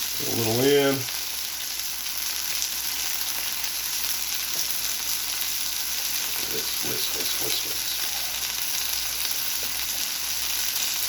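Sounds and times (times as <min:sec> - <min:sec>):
chicken sizzling on a griddle: 0:00.0 - 0:11.0.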